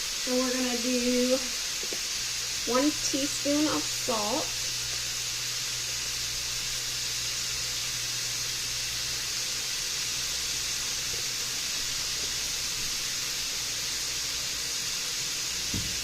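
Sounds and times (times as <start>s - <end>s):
meat and onions sizzling in pan: 0.0s - 16.0s
soft knock: 15.7s - 16.0s.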